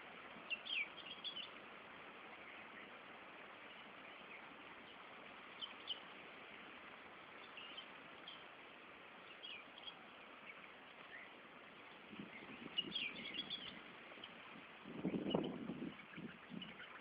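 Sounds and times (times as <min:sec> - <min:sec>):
steady hiss: 0:00.0 - 0:17.0
high bird chirps: 0:12.2 - 0:14.4.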